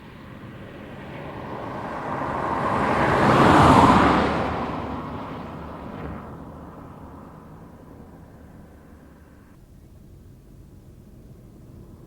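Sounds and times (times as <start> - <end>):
car driving away: 0.0 - 9.6.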